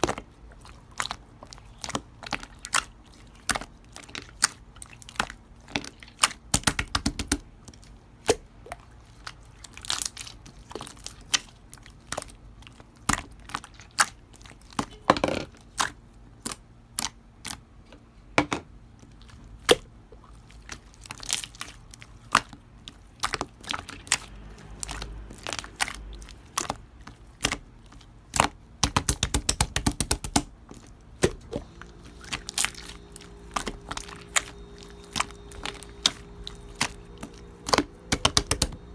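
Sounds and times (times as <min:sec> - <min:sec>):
slime clicking and popping: 0:06.1 - 0:07.4, 0:28.3 - 0:30.5, 0:32.2 - 0:38.9.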